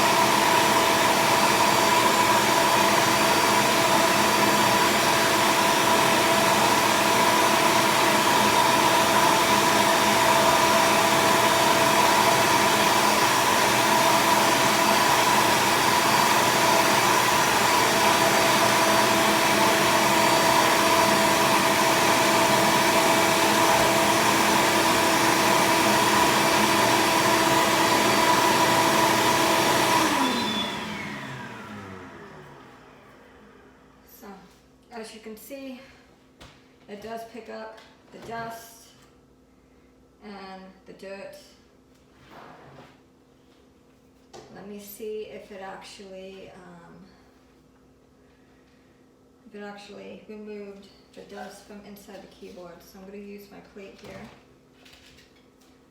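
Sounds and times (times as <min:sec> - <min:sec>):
vacuum motor winding down: 0:00.0 - 0:33.9
vacuum cleaner running: 0:00.0 - 0:34.7.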